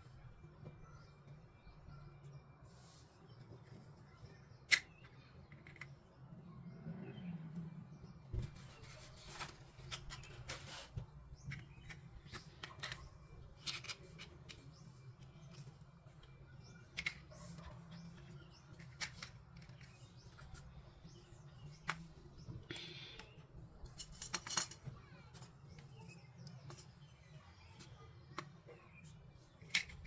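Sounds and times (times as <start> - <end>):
plastic pieces clicking and rustling: 8.8 - 15.7, 16.8 - 20.7, 22.7 - 25.9, 29.6 - 30.0.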